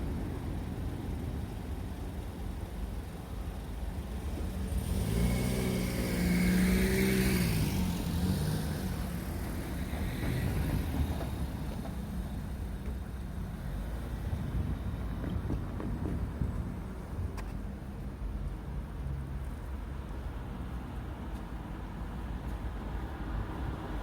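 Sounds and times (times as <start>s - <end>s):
low traffic rumble: 0.0s - 24.0s
vehicle driving past: 4.8s - 11.1s.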